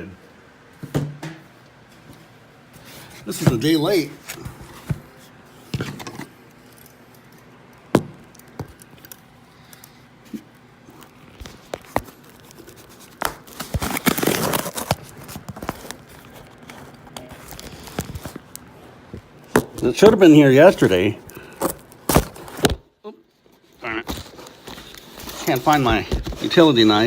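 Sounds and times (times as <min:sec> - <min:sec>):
rustling and scraping: 0:01.9 - 0:06.9, 0:10.3 - 0:19.3, 0:23.3 - 0:27.0.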